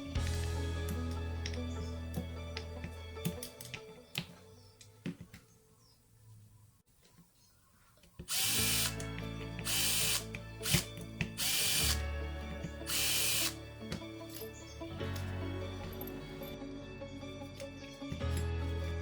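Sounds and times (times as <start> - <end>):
background music: 0.0 - 6.0, 8.3 - 19.0
power tool bursts: 8.2 - 12.0, 12.6 - 13.6.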